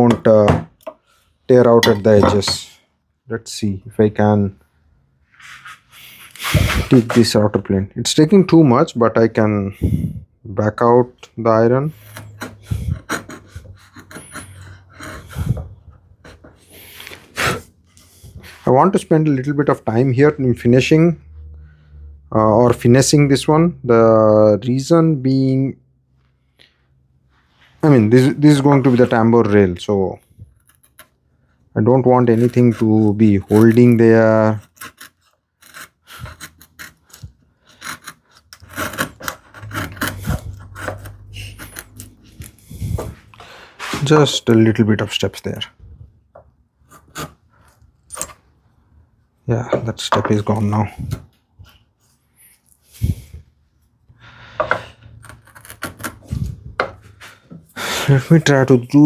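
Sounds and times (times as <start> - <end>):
router plane scraping wood: 11.9 - 17.7, 27.8 - 29.6, 32.1 - 44.6, 54.6 - 58.8.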